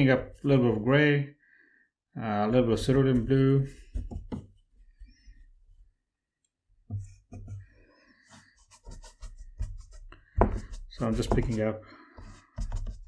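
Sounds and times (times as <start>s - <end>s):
brush scraping: 8.2s - 13.0s.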